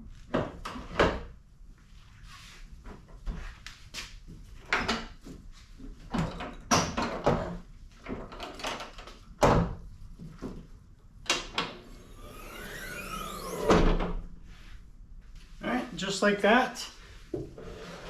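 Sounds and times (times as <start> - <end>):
squeak sliding in pitch: 12.0 - 13.8.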